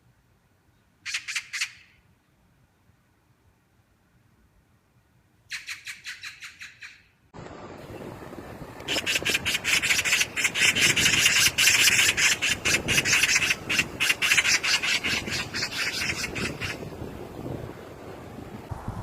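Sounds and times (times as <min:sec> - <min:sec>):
magpie chattering: 0:01.0 - 0:01.9, 0:05.5 - 0:07.1, 0:08.9 - 0:16.8.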